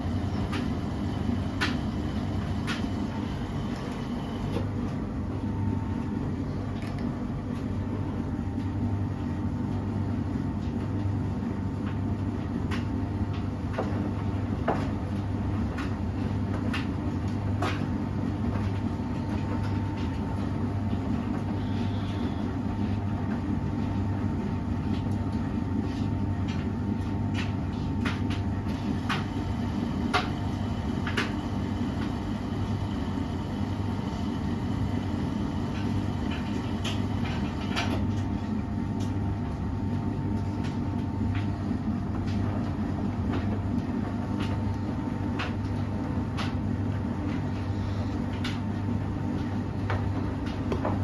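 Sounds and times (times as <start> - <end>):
washing machine humming: 0.0 - 51.0.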